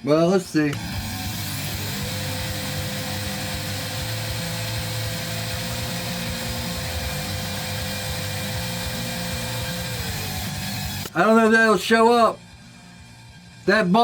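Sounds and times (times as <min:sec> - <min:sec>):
belt grinder whine: 0:00.2 - 0:11.2.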